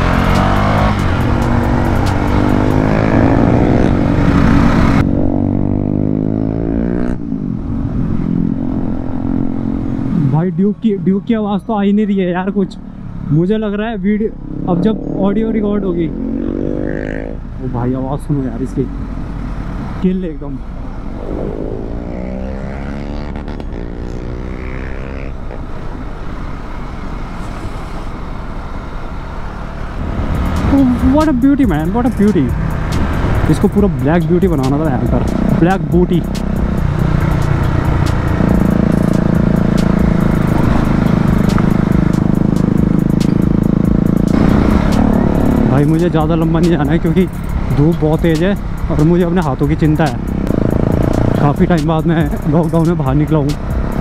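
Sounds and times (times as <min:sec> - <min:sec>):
motorcycle engine revving through gears: 0:00.0 - 0:10.2, 0:14.2 - 0:20.0, 0:21.0 - 0:26.0, 0:29.4 - 0:54.0
wind rumble: 0:20.6 - 0:26.4.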